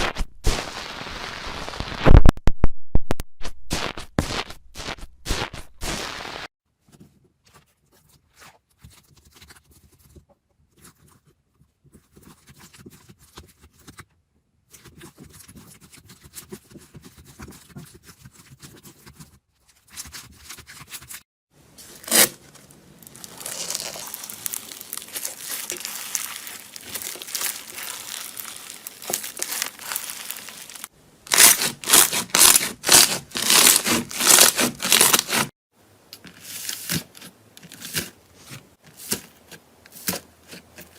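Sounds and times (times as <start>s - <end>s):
slime crackling and popping: 23.0s - 35.4s.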